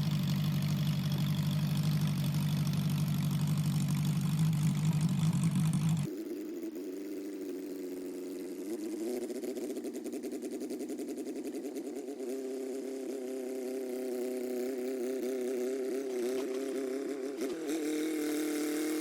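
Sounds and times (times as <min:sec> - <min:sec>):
bulldozer engine running: 0:00.0 - 0:06.1.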